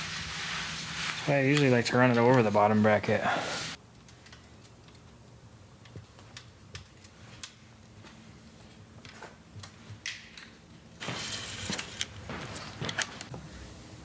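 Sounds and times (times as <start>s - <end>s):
light clicks of bike parts: 3.8s - 5.2s, 5.8s - 10.6s.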